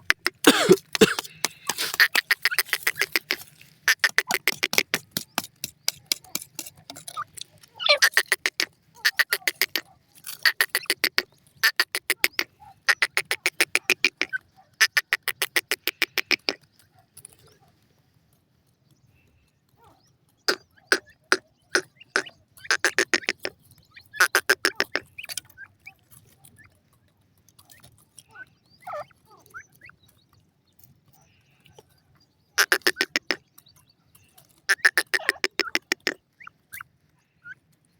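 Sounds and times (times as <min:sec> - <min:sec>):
francolin calling: 0:00.0 - 0:04.8, 0:06.9 - 0:16.6.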